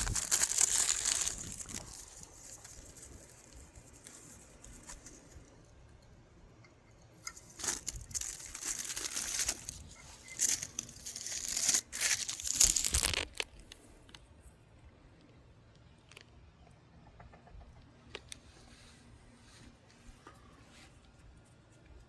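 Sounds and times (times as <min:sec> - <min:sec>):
firecrackers cracking: 0:10.4 - 0:13.5.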